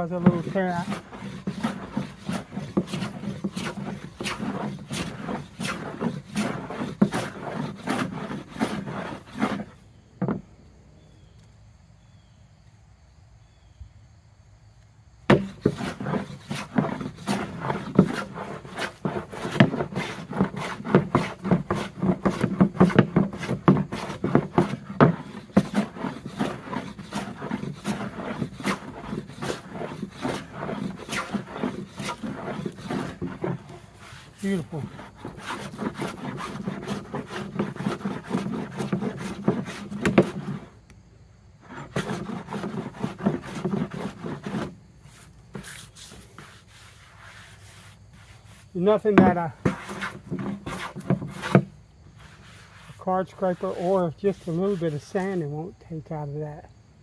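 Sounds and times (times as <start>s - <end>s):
hand plane strokes on wood: 0.0s - 10.4s, 15.3s - 40.9s, 41.6s - 55.6s
wooden knock: 10.2s - 10.4s, 15.3s - 15.8s.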